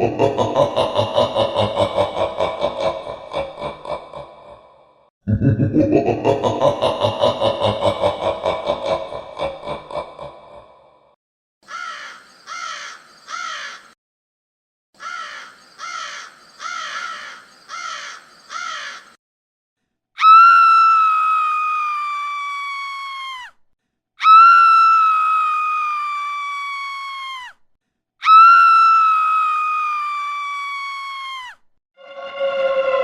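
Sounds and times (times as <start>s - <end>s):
harsh crow-like caws: 11.6s - 14.0s, 15.0s - 19.2s
long high-pitched screams: 20.2s - 23.5s, 24.2s - 27.6s, 28.2s - 33.0s.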